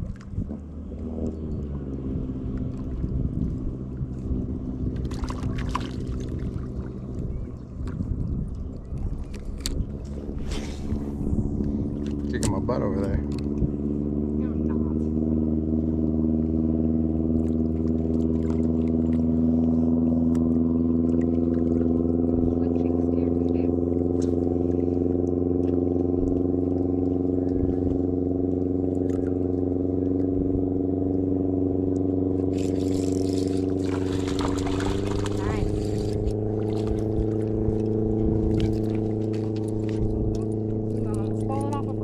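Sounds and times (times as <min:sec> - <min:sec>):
wind on microphone: 0:00.0 - 0:14.2, 0:32.5 - 0:42.0
engine droning: 0:00.0 - 0:42.0
motor humming: 0:15.8 - 0:42.0.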